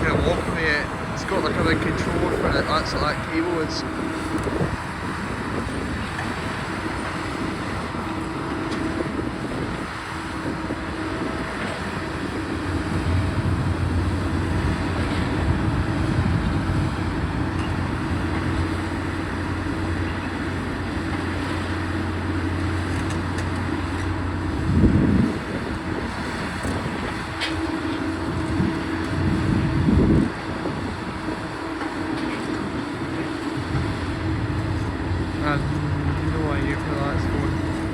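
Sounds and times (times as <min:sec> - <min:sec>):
demolition machinery engine drone: 0:00.0 - 0:37.9
deep hum: 0:12.5 - 0:20.8, 0:33.7 - 0:37.9.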